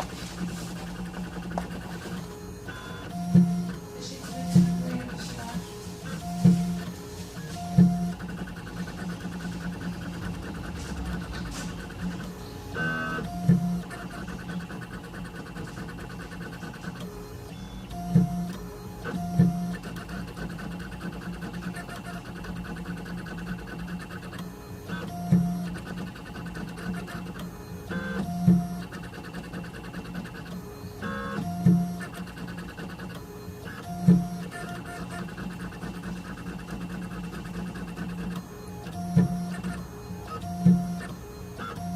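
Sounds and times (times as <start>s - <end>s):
engraving machine motor hum: 0.0s - 17.0s.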